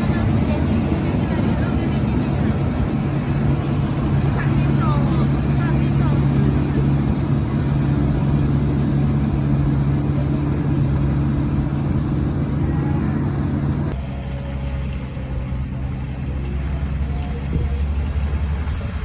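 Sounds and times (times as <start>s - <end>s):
diesel engine running under load: 0.0s - 19.0s.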